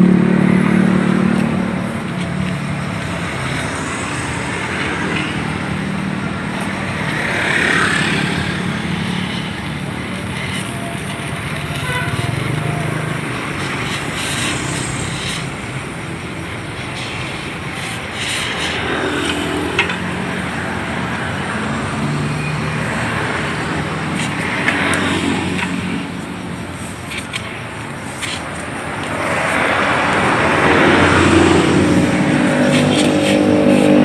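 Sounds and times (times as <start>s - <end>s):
vehicle engines passing: 0.0s - 34.0s.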